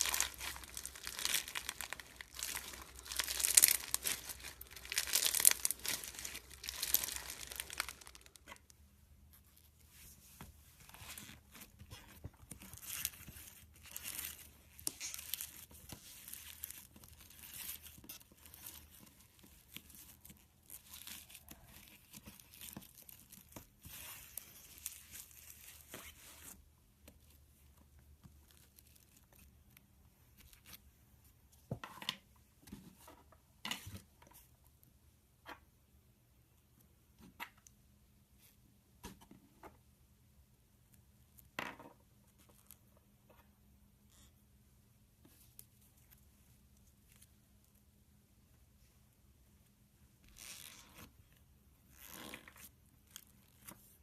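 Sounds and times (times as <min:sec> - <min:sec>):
slime crackling and popping: 0:00.0 - 0:08.5.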